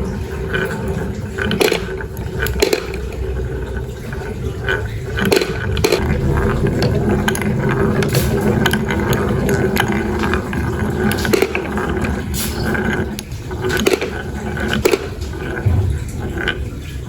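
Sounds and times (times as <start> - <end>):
marbles clicking and knocking: 0.0 - 13.0
marbles rolling on wooden track: 0.0 - 15.6.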